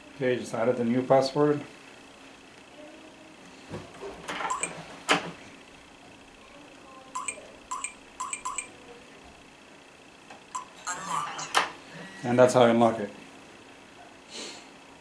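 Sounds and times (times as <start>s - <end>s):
keypad short beeps: 4.5s - 4.7s, 7.2s - 8.7s
keypad click: 7.2s - 8.7s.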